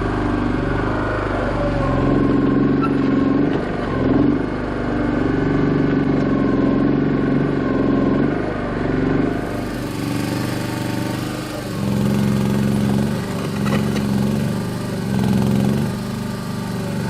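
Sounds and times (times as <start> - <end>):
small excavator engine running: 0.0 - 17.0.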